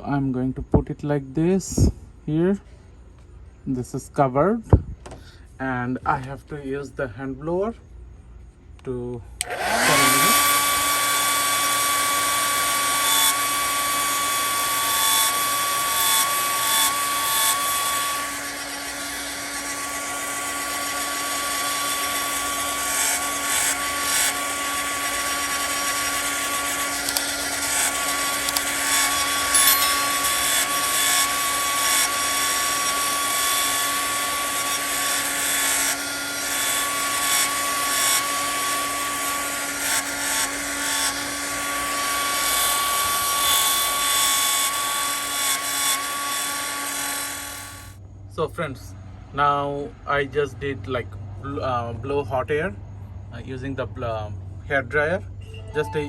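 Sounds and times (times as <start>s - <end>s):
hair dryer whining: 9.4s - 14.2s, 22.7s - 31.7s.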